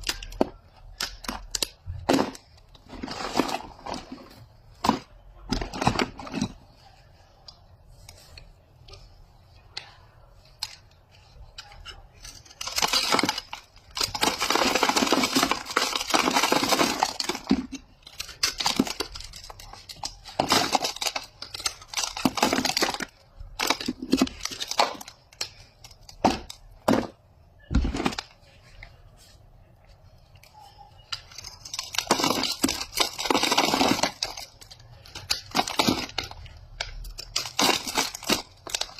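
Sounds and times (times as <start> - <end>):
paper wrapper tearing and crinkling: 11.6 - 26.8, 31.0 - 38.9.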